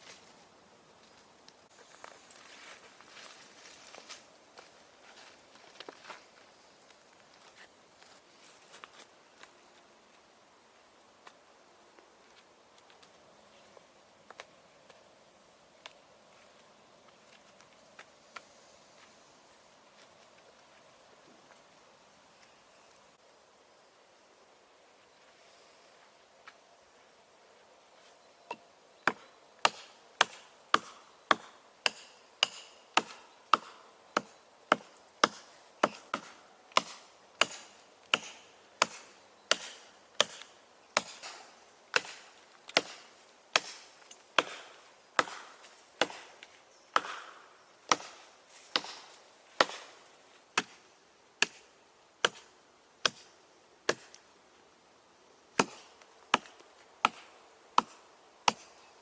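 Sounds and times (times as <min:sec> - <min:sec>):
wood being chopped: 0:29.0 - 0:46.4, 0:47.0 - 0:50.0, 0:51.4 - 0:53.3, 0:53.9 - 0:54.2, 0:55.6 - 0:58.7.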